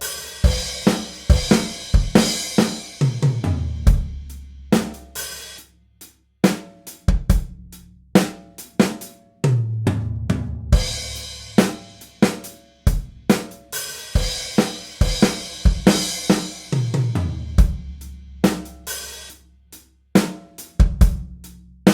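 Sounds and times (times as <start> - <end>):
drum kit beat: 0.0 - 5.7, 6.4 - 21.9.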